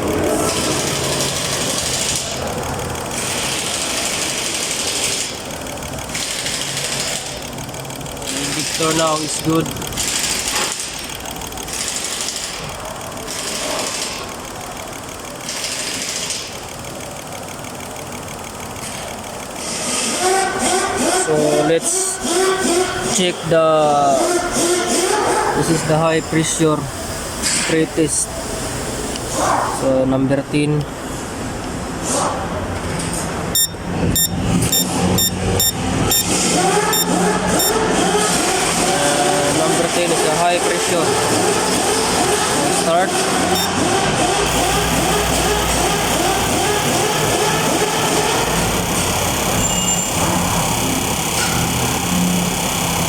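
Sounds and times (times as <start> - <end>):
fuel injector clicking rapidly: 0.0 - 29.4, 33.6 - 53.0
machine low hum: 0.0 - 31.8, 33.3 - 40.3, 41.0 - 53.0
short electronic beeps: 33.6 - 37.8, 43.6 - 43.8.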